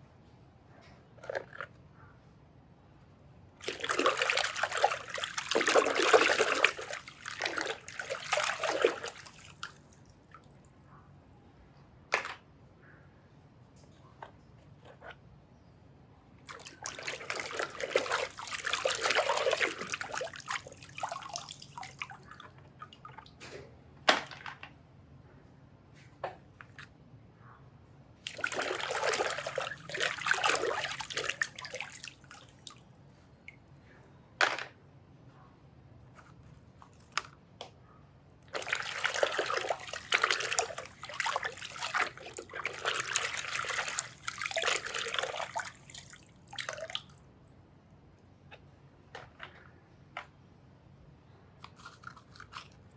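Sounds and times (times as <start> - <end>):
water splashing over plastic toys: 3.6 - 10.6, 16.5 - 23.4, 28.2 - 32.8, 38.5 - 47.2.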